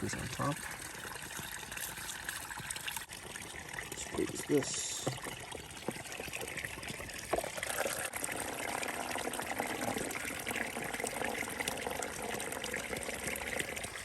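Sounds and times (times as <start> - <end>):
water streaming and trickling: 0.0 - 14.0.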